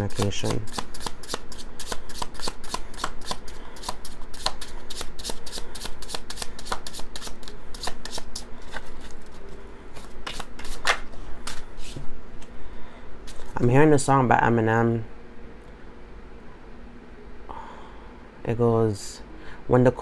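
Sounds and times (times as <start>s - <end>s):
cards being shuffled: 0.0s - 12.1s, 13.3s - 13.7s.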